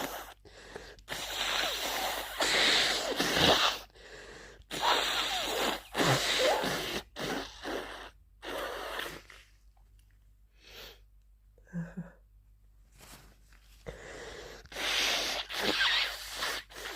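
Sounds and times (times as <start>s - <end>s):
congested nose and breath sounds: 0.0s - 9.6s, 13.8s - 16.9s.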